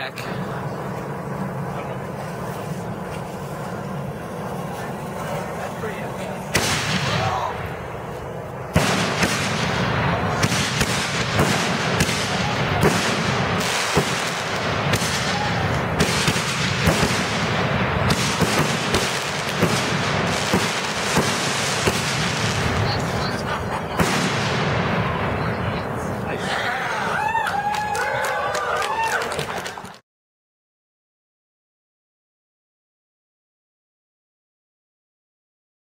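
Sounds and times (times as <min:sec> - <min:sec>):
fireworks barrage bangs: 0:00.0 - 0:26.4.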